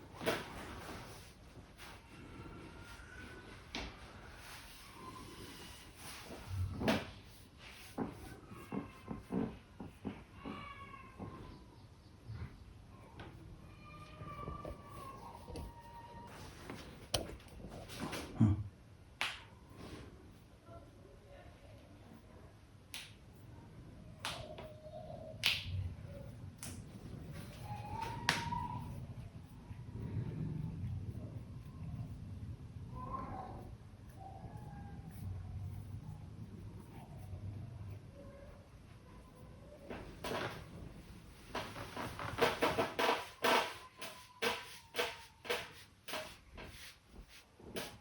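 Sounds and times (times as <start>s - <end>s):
hands snapping and slapping: 19.2s - 19.5s, 24.2s - 24.5s, 25.4s - 25.7s.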